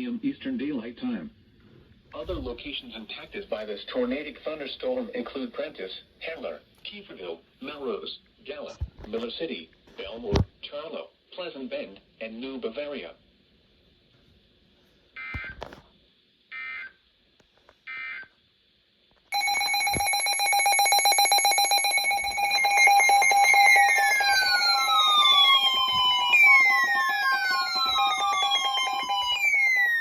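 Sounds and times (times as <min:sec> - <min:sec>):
electronic alert tone with falling sweeps: 0:19.4 - 0:30.0
digital data bursts: 0:21.2 - 0:30.0.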